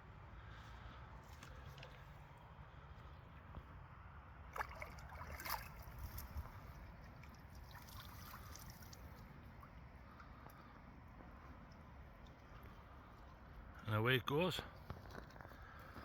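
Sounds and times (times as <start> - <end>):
pond water sloshing and splashing: 4.2 - 13.8.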